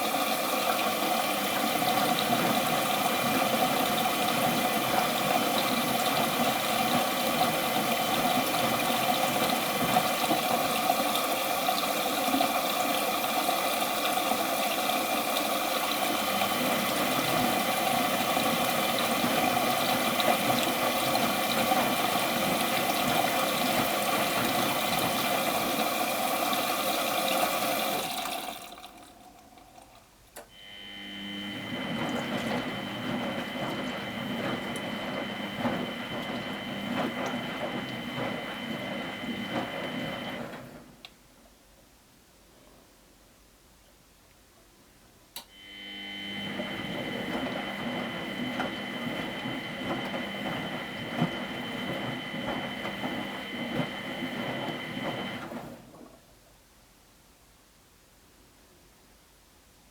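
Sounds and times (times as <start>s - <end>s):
water rushing through washing machine: 0.0s - 41.0s, 45.6s - 56.4s.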